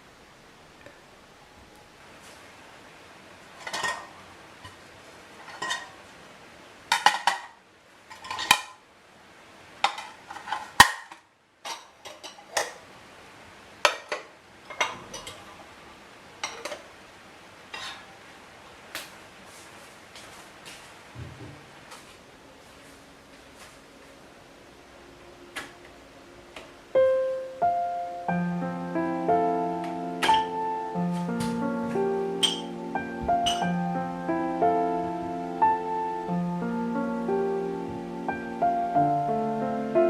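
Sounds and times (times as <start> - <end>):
dishes and utensils clinking: 3.6 - 4.2, 5.4 - 6.0, 6.9 - 8.8, 9.8 - 12.8, 13.9 - 15.6, 16.4 - 16.9, 17.7 - 18.1, 30.2 - 30.6, 32.4 - 32.8, 33.4 - 33.7.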